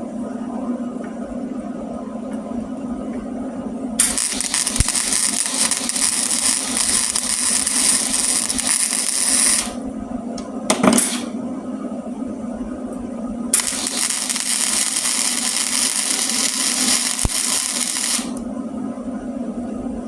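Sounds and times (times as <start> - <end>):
steady low hum: 0.0 - 20.0
welding arc crackling and hissing: 4.0 - 9.8, 10.8 - 11.4, 13.6 - 18.4.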